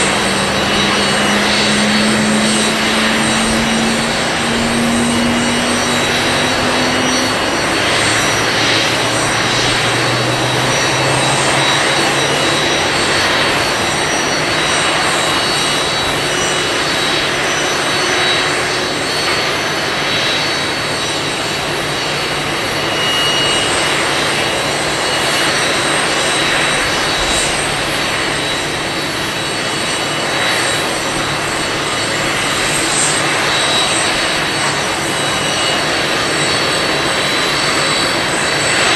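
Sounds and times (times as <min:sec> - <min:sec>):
high engine whine: 0:00.0 - 0:38.9
jet engines running: 0:00.0 - 0:38.9.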